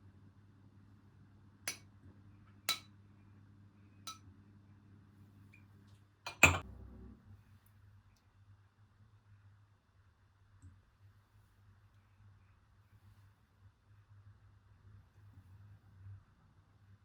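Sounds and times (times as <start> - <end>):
kitchenware clinking: 6.3 - 6.6.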